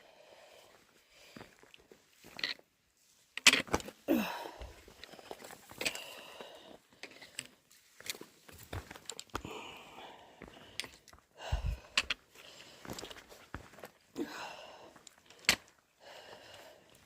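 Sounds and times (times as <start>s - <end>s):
footsteps on rock: 8.0s - 9.5s, 10.4s - 13.9s.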